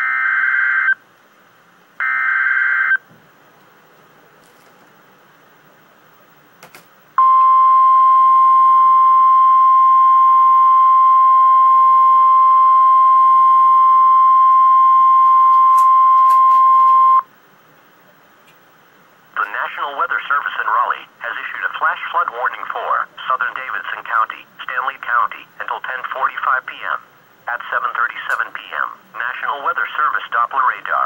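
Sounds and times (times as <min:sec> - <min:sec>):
steady warning tone: 0:07.2 - 0:17.4.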